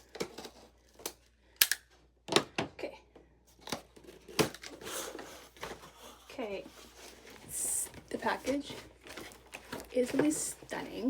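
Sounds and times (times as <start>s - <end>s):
packing tape tearing: 3.6s - 6.1s.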